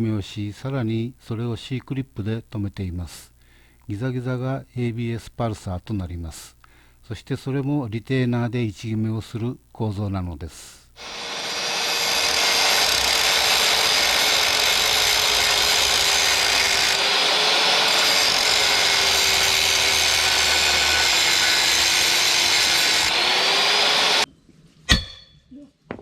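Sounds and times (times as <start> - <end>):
power tool running under load: 11.0 - 24.3.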